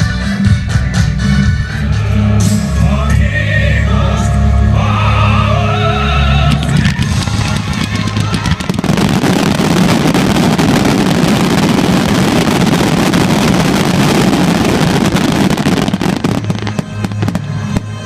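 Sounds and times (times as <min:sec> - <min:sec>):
fireworks bursting: 0:06.5 - 0:18.0.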